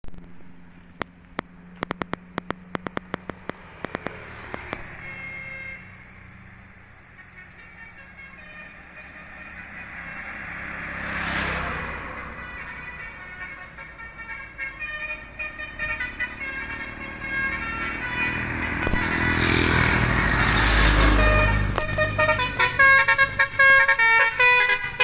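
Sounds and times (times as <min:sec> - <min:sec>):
sharp clicks: 0:01.0 - 0:04.9
bus horn tones: 0:04.9 - 0:06.0, 0:13.0 - 0:25.0.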